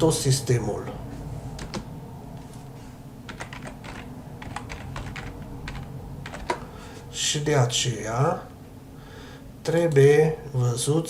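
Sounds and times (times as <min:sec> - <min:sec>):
low steady hum: 0:00.0 - 0:11.0
typing on a computer keyboard: 0:01.6 - 0:01.8, 0:03.3 - 0:06.7.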